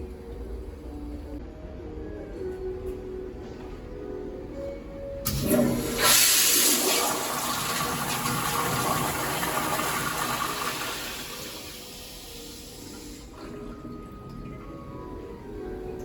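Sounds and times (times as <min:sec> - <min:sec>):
toilet flushing: 0:05.3 - 0:16.0.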